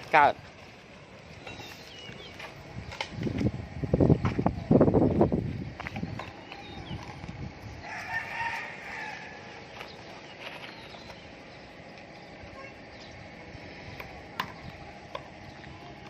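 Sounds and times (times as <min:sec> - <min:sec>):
outdoor background: 0:00.0 - 0:16.0
rooster crowing: 0:07.8 - 0:09.6.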